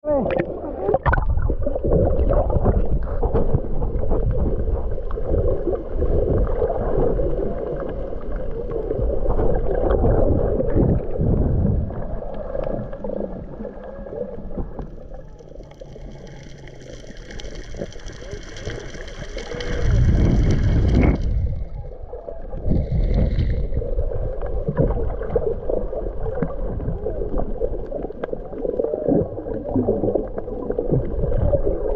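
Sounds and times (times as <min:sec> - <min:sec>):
muffled underwater gurgling: 0:00.0 - 0:31.9
small clicks and pops: 0:14.5 - 0:21.6.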